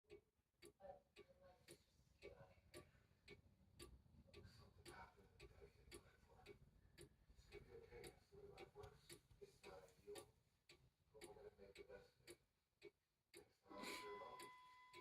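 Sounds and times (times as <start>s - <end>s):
clock ticking faintly: 0.1s - 15.0s.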